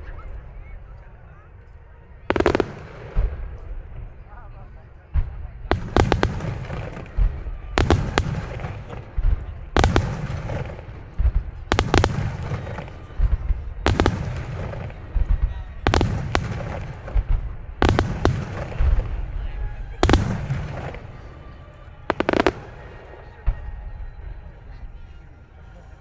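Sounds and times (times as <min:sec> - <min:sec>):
fireworks crackling: 0:02.3 - 0:04.3, 0:05.2 - 0:24.7.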